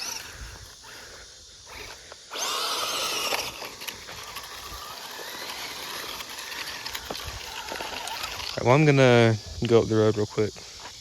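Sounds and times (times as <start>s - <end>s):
toy truck electric motor whining: 0.0s - 9.3s
tyres scrabbling on dirt: 1.7s - 9.4s.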